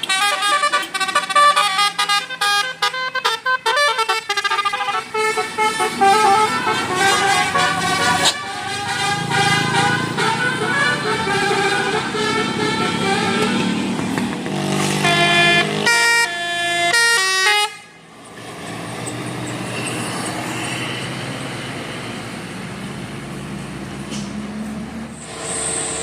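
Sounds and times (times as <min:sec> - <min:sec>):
musical bus air horn: 0:00.0 - 0:18.1
road noise: 0:00.0 - 0:26.0
engine hum: 0:04.1 - 0:26.0.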